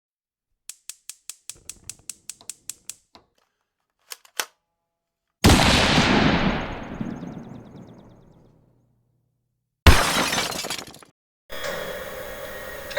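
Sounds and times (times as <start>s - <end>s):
sharp clicks: 0.7s - 4.6s
loud crash: 5.5s - 8.0s.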